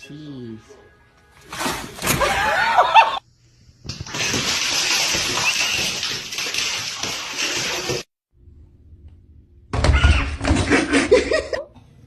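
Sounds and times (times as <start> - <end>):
running water: 3.9 - 8.1.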